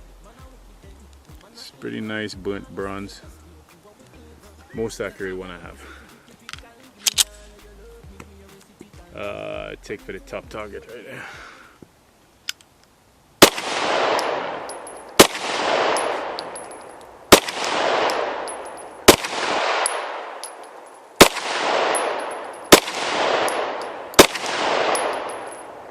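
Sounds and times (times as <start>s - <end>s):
pistol shots: 13.4s - 25.9s
rolling echo: 13.4s - 25.9s.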